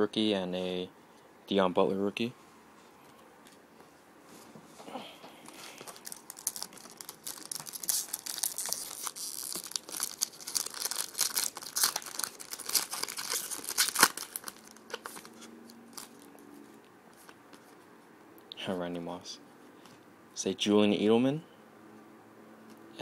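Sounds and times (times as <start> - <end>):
wrapper tearing and crinkling: 5.5 - 16.2.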